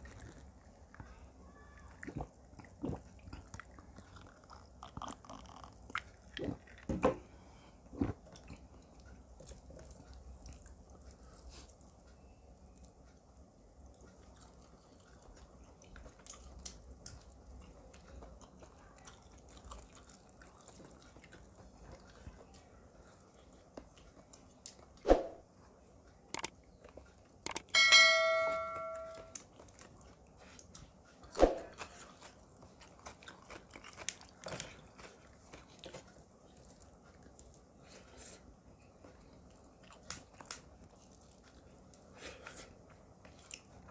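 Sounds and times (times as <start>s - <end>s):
chewing: 0.0s - 13.2s, 13.8s - 27.7s, 29.0s - 43.9s
tableware clink: 27.7s - 29.4s.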